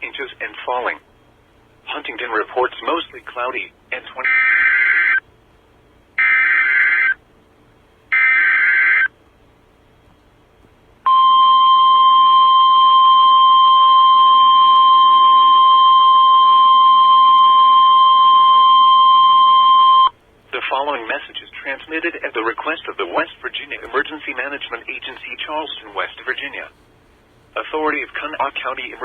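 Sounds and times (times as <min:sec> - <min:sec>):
steady warning alarm tone: 0:04.2 - 0:05.2, 0:06.2 - 0:07.2, 0:08.1 - 0:09.1, 0:11.1 - 0:20.2.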